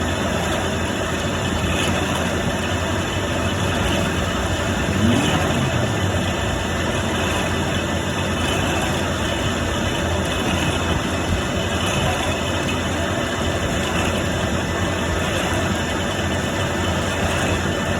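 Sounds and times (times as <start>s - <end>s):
milling machine mechanical din: 2.8s - 8.5s.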